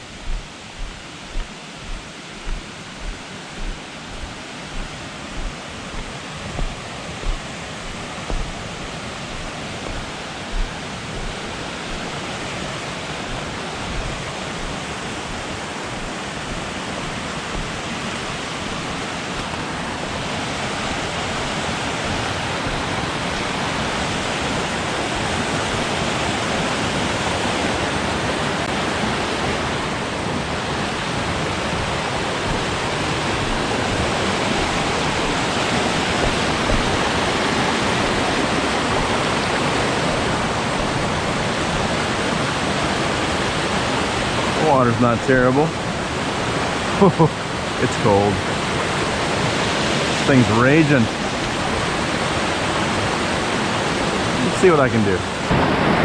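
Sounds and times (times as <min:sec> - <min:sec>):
creek rushing over waterfall: 0:00.0 - 0:56.0
low thuds: 0:00.2 - 0:12.6, 0:13.2 - 0:19.6, 0:33.4 - 0:37.1.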